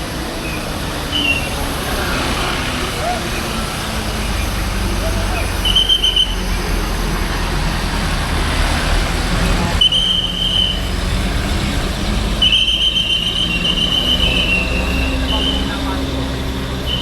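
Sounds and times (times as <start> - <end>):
bus engines running: 0.0 - 17.0
traffic: 0.0 - 17.0.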